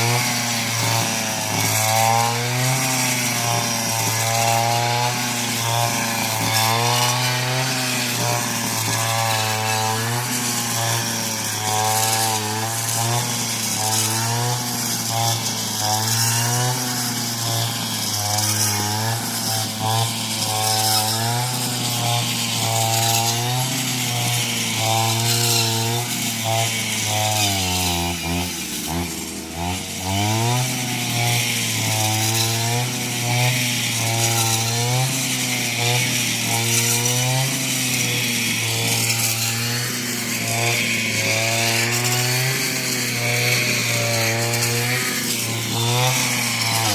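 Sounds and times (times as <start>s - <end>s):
small petrol engine running: 0.0s - 46.9s.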